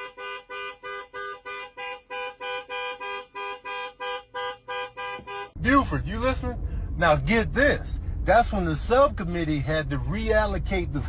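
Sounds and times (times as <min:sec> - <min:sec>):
two-tone horn honking: 0:00.0 - 0:05.6.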